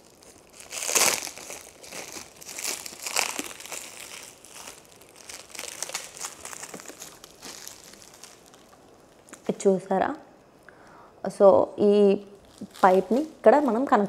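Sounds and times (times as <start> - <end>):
plastic packaging crinkling: 0.0 - 9.6, 12.4 - 14.0.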